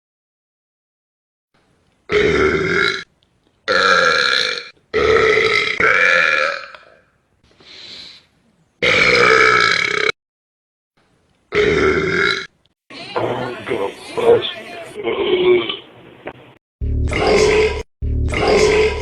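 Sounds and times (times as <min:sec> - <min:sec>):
man burping: 0:02.1 - 0:03.0, 0:03.7 - 0:07.0, 0:08.8 - 0:10.2, 0:11.5 - 0:12.5, 0:17.2 - 0:19.0.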